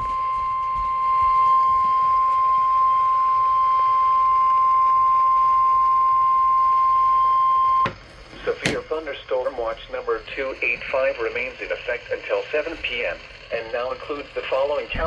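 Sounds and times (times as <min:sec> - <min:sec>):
radio hiss: 0:07.7 - 0:15.0.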